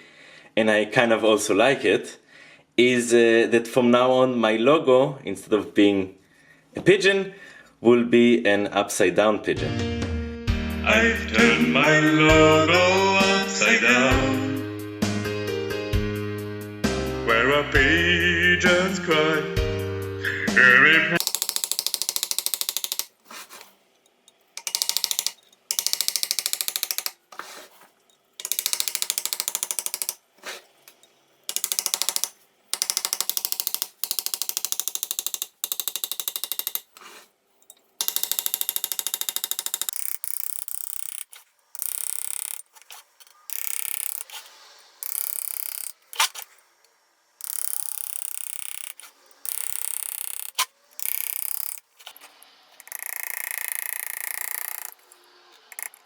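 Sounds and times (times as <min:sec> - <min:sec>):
engraving tool ticking on brass: 0:21.2 - 0:23.2, 0:24.6 - 0:27.4, 0:28.4 - 0:30.2, 0:30.9 - 0:37.0, 0:37.6 - 0:44.3, 0:45.0 - 0:46.0, 0:47.4 - 0:51.8, 0:52.8 - 0:55.0, 0:55.7 - 0:56.0.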